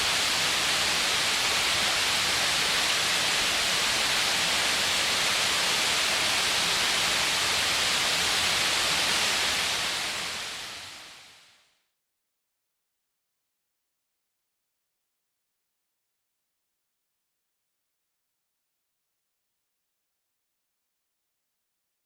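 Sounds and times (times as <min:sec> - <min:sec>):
waterfall rushing: 0:00.0 - 0:11.2.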